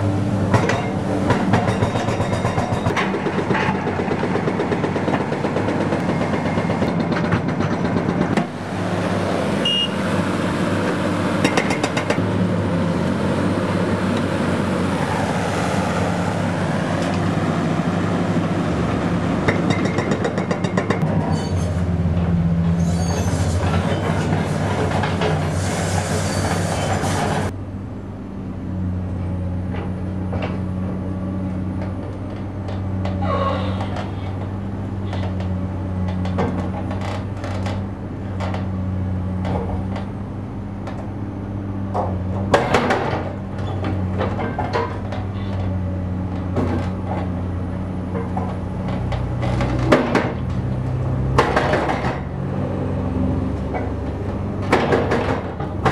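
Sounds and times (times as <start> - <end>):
dense rumble and clatter: 0.0 - 9.4, 10.6 - 27.6, 29.0 - 55.9
heavy machinery engine running: 0.0 - 55.9
metal clanks and knocks: 0.5 - 8.5, 35.1 - 38.8, 41.9 - 45.8, 48.1 - 50.6, 51.3 - 52.3, 53.7 - 55.9.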